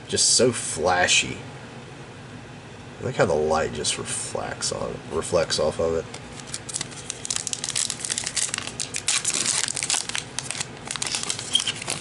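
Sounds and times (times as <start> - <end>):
plastic wrapper crinkling and tearing: 6.3 - 12.0.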